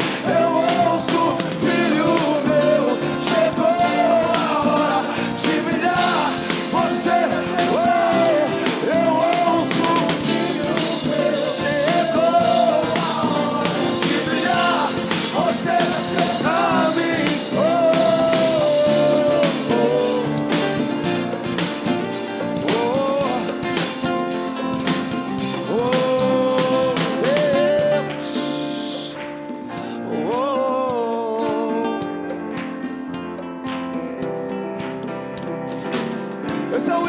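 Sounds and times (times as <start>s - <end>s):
person singing slow melody: 0.0s - 21.0s, 22.6s - 24.0s, 25.5s - 32.4s
band accompaniment: 0.0s - 37.0s.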